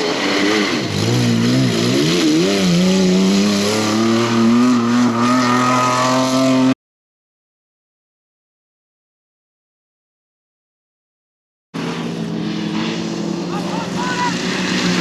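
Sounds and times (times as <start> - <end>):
race car engine revving: 0.0 - 6.8, 11.8 - 15.0.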